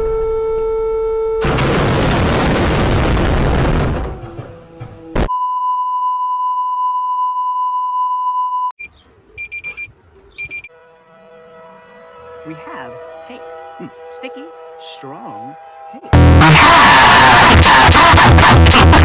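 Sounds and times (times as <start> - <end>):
short high beeps: 5.3 - 10.7
steady electronic tone: 16.0 - 18.8
tv static burst: 16.2 - 19.0.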